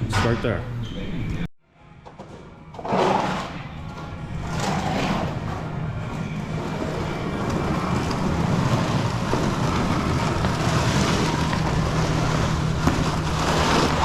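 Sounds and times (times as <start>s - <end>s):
engine running: 4.3s - 14.0s.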